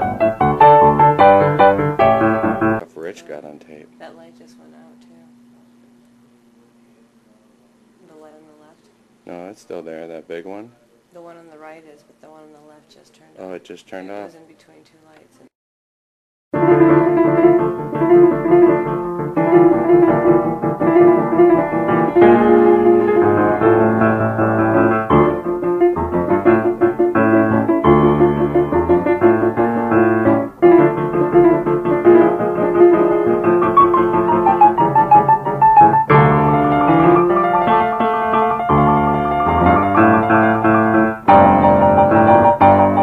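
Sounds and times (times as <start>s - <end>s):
piano music: 0.0s - 5.2s, 16.6s - 43.0s.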